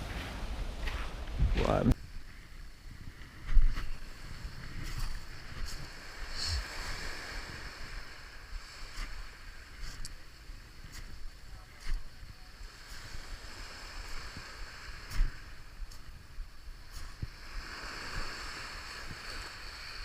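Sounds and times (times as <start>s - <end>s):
wind rumbling on microphone: 0.0s - 20.0s.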